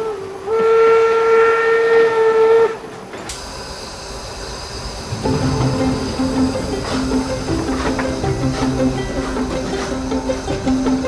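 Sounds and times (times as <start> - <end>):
steam locomotive whistle: 0.0 - 11.0
steam hissing: 3.3 - 11.0
music: 5.0 - 11.0.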